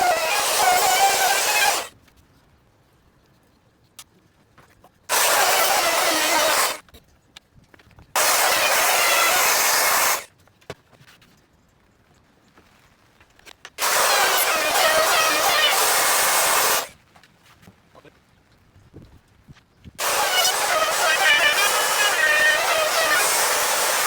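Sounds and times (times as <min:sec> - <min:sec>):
loud hissing bursts: 0:00.0 - 0:01.9, 0:05.1 - 0:06.8, 0:08.2 - 0:10.3, 0:13.8 - 0:16.9, 0:20.0 - 0:24.0.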